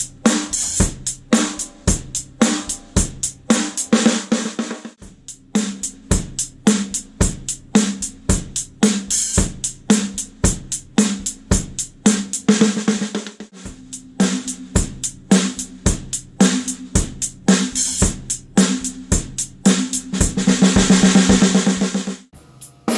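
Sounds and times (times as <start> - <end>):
bass drum beats: 0.0 - 3.9, 5.0 - 12.2, 13.6 - 22.9
hi-hat or cymbal strokes: 0.0 - 4.3, 5.0 - 12.7, 13.6 - 22.9
snare drum crack: 19.7 - 22.9.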